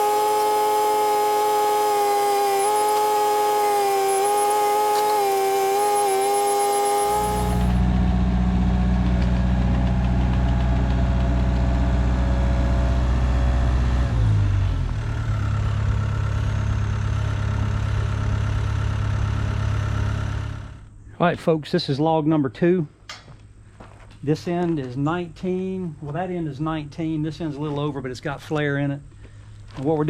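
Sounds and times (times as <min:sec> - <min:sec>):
saw blade whining: 0:00.0 - 0:07.9
engine humming: 0:00.0 - 0:20.9.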